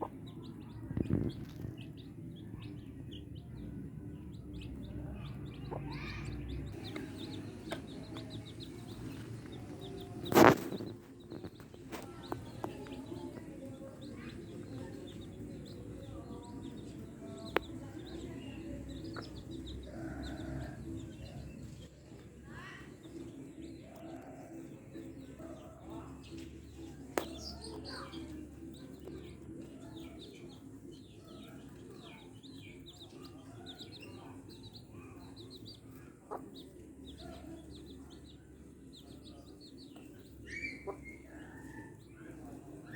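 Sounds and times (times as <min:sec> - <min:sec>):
chickens clucking: 0:00.0 - 0:42.9
small birds chirping: 0:00.0 - 0:42.9.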